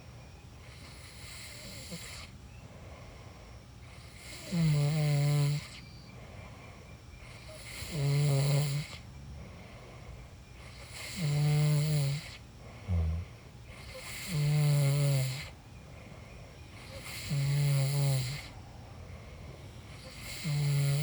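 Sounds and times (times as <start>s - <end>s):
person snoring: 4.2s - 5.8s, 7.6s - 9.0s, 10.7s - 15.5s, 16.9s - 18.5s, 20.0s - 21.0s.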